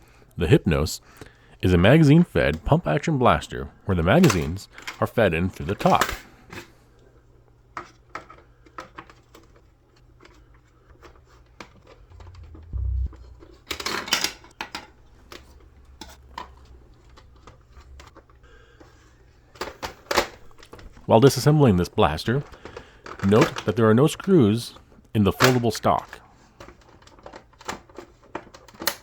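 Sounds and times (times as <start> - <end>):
plastic rattle: 26.6 - 29.0.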